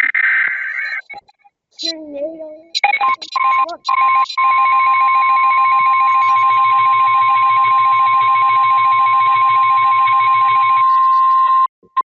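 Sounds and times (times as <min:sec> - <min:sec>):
rapidly pulsing alarm tone: 0:02.8 - 0:11.7
loud high warning tone: 0:03.4 - 0:11.7.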